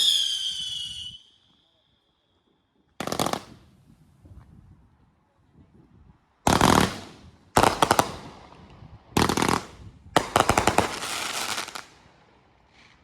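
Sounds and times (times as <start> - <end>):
firework bangs and crackles: 3.0 - 4.0, 6.5 - 13.0.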